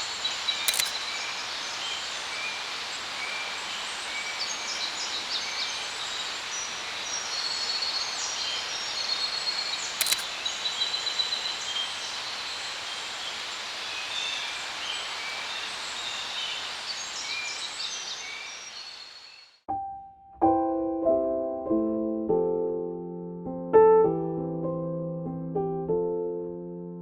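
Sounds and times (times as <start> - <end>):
small birds chirping: 0.0 - 19.5
outdoor background hiss: 0.0 - 19.6
sharp click: 0.6 - 1.0, 10.0 - 10.3.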